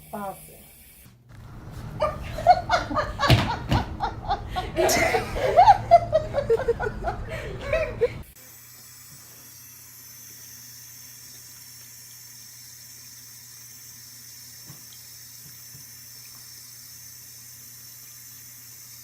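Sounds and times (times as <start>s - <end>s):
running water hissing: 8.2s - 19.0s.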